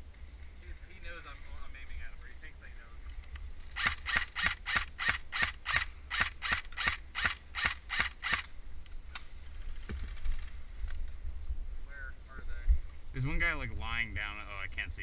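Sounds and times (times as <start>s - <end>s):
airsoft gun single shots: 3.8s - 8.5s.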